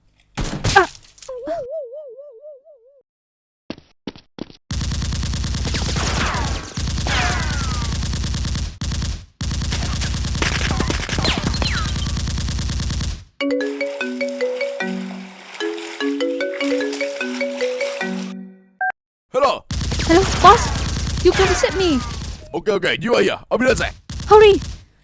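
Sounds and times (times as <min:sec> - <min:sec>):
automatic gunfire: 0:04.7 - 0:13.2, 0:19.7 - 0:22.5
marimba-like melody: 0:13.4 - 0:18.6.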